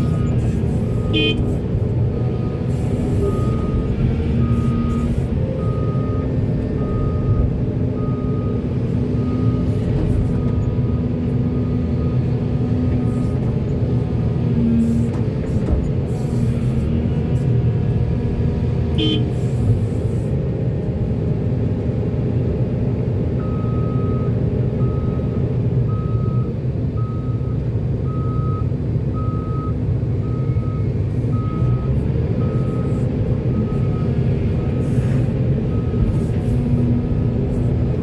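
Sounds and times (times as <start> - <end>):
reversing alarm beeping: 0.0 - 1.6, 2.4 - 8.6, 19.0 - 19.4, 25.9 - 37.0
diesel machinery running: 0.0 - 38.0.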